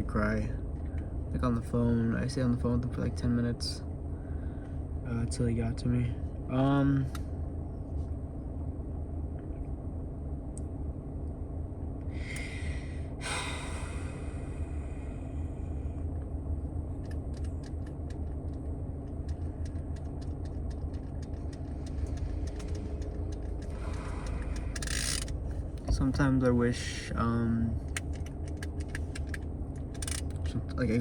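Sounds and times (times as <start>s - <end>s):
low engine rumble: 0.0s - 31.0s
quick run of small clicks: 17.0s - 25.9s, 27.8s - 30.6s.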